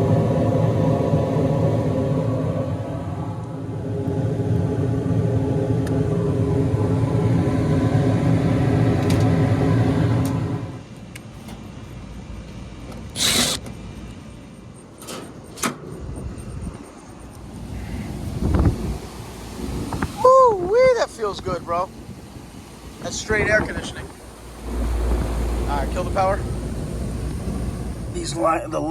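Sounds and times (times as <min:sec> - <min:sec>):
hvac unit humming: 0:00.0 - 0:28.9
loud hiss: 0:13.1 - 0:13.7.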